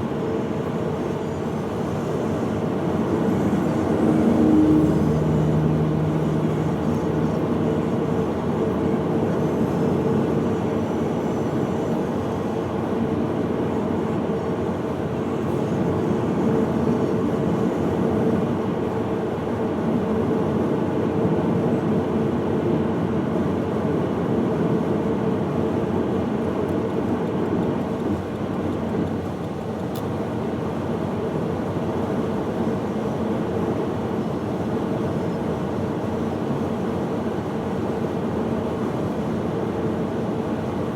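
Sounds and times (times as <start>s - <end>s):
vehicle engine and road noise: 0.1s - 12.2s.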